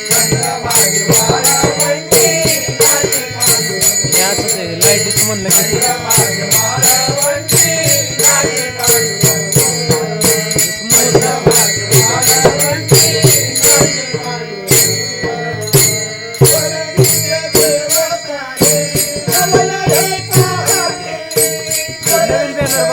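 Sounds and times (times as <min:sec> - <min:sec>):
person singing: 0:00.0 - 0:22.9
rattling percussion beat: 0:00.0 - 0:22.9.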